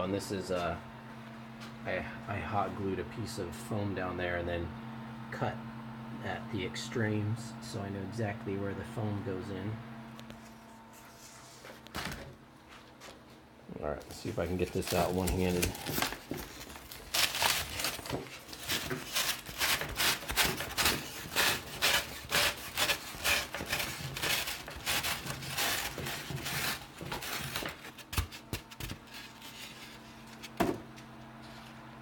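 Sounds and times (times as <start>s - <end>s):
foam scraping against foam: 14.2s - 27.9s.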